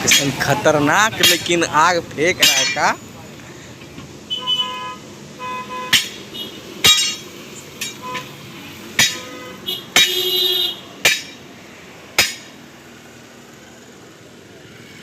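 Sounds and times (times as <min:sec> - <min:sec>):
hammer striking steel wheel rim: 0:00.0 - 0:00.4, 0:01.2 - 0:01.6, 0:02.4 - 0:03.0, 0:05.9 - 0:08.3, 0:09.0 - 0:10.2, 0:11.0 - 0:11.4, 0:12.2 - 0:12.6.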